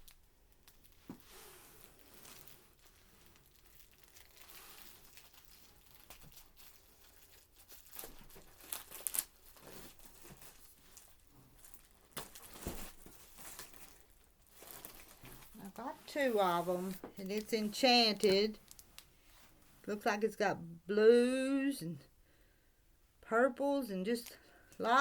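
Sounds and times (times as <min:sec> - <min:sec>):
plastic wrapping crinkling and tearing: 0:00.0 - 0:19.1.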